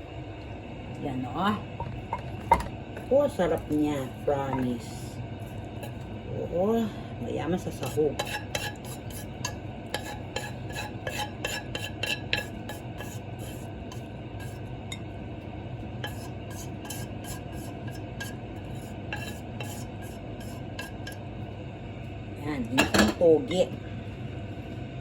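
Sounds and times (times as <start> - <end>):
steady low hum: 0.0 - 25.0
metal utensils scraping dishware: 7.8 - 9.3, 10.0 - 13.6.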